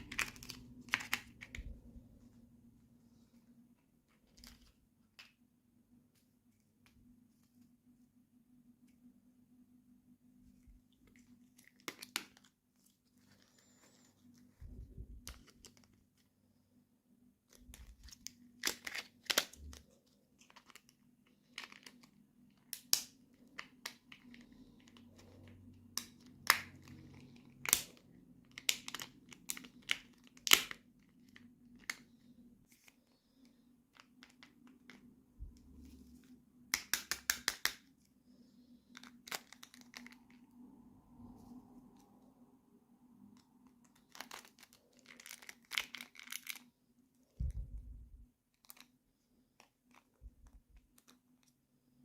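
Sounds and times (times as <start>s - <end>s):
faint low hum: 0.0s - 37.2s, 37.8s - 52.0s
packaging crinkling and tearing: 17.6s - 25.0s, 43.8s - 46.7s.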